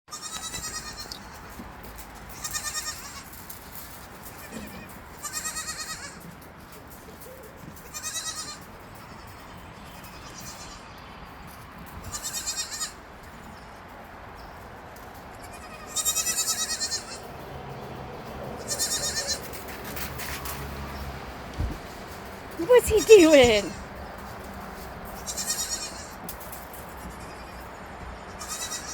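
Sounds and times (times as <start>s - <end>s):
goat bleating: 0.1s - 1.4s, 2.4s - 3.2s, 4.4s - 6.2s, 7.8s - 9.2s, 12.1s - 12.9s, 15.4s - 17.2s, 18.6s - 19.4s, 25.3s - 26.2s, 28.4s - 28.9s.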